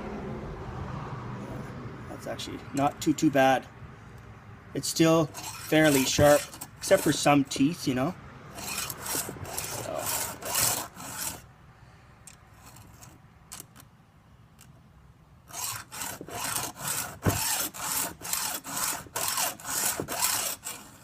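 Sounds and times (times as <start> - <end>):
file rasping on chainsaw chain: 4.8 - 11.5, 12.6 - 13.8, 15.5 - 21.0.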